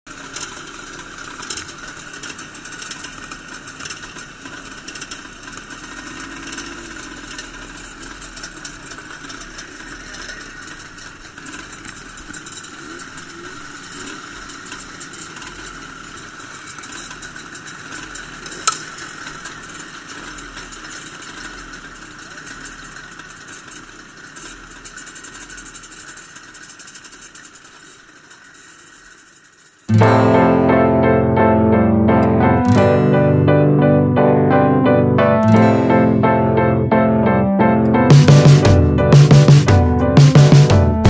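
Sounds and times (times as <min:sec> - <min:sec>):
distant motorcycle engines idling: 0:00.1 - 0:30.6.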